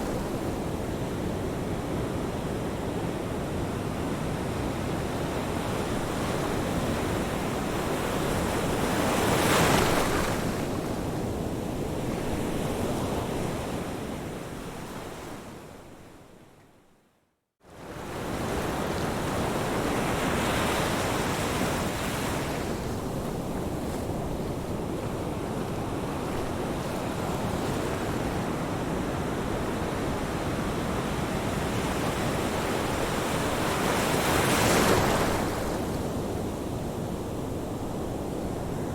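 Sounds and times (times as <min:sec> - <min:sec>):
ocean waves washing ashore: 0:17.8 - 0:38.9.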